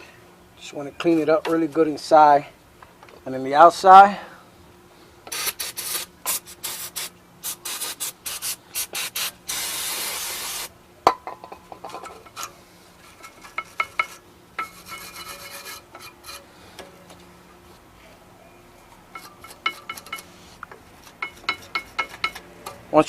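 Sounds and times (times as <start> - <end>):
aerosol spray: 5.3 - 10.7
brush scrubbing metal: 11.9 - 16.5, 19.1 - 23.0.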